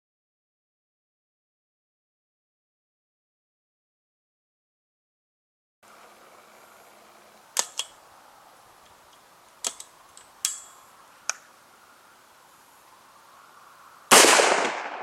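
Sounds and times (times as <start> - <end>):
faint steady hiss: 5.8 - 15.0.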